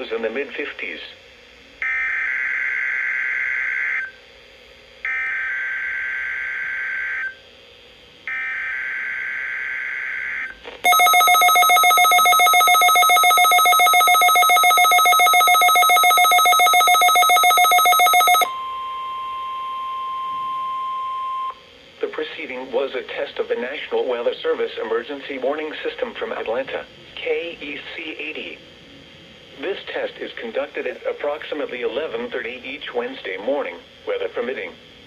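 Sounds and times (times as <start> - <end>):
harsh buzzing digital chirps: 8.3 - 21.6
fast-pulsing warning alarm tone: 8.4 - 21.6.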